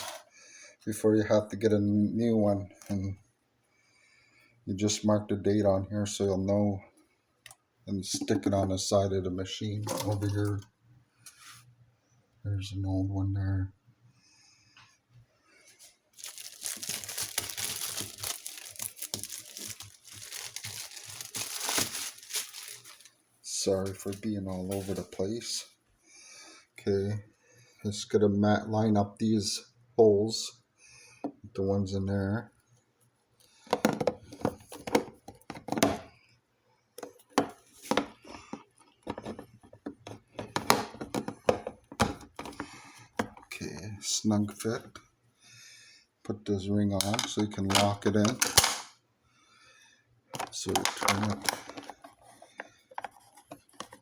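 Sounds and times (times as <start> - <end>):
packaging crinkling: 16.2 - 23.2
plastic knocks clicks and scrapes: 37.0 - 43.5, 50.4 - 54.0.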